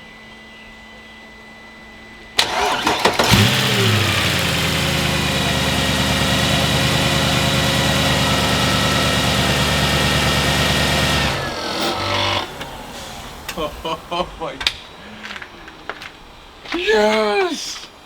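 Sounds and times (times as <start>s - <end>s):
engine starter cranking: 2.4s - 14.5s
car engine revving and idling: 2.5s - 14.4s.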